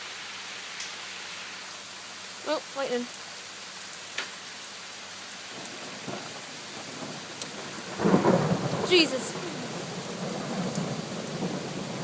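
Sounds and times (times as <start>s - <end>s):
heavy rain hissing: 0.0s - 12.0s
thunder rumbling: 5.5s - 12.0s.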